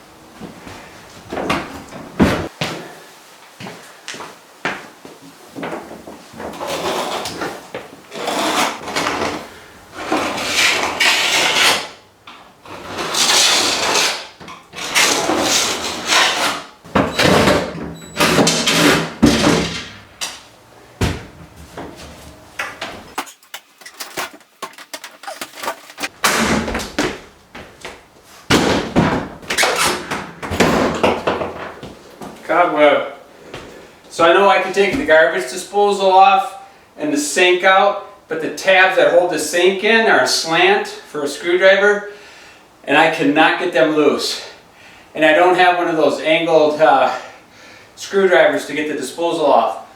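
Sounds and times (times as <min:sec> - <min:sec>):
wood scraping and clattering: 0:05.7 - 0:12.0, 0:12.6 - 0:20.4, 0:21.0 - 0:32.5
wood knocking and banging: 0:24.4 - 0:32.4.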